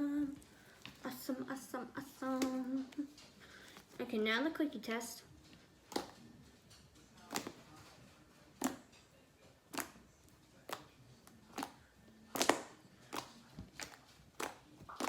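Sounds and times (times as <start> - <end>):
slime clicking pops: 11.5 - 15.0.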